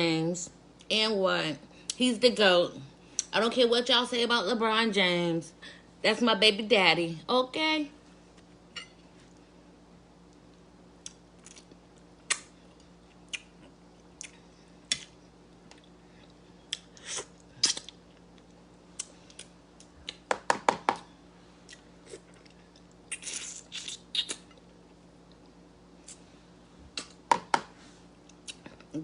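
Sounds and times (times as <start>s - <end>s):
mouth clicks and smacks: 13.2s - 15.9s, 16.7s - 18.0s, 21.7s - 24.6s, 27.0s - 27.2s.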